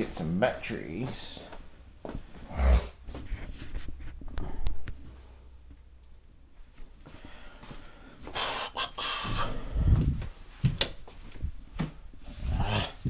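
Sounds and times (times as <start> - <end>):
person breathing heavily: 2.4 - 3.1, 7.0 - 10.4, 12.3 - 13.0.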